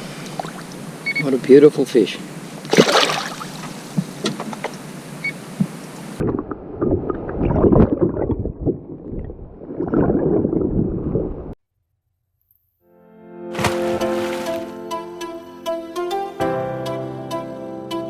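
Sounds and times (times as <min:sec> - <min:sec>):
water lapping against hull: 0:13.6 - 0:14.8.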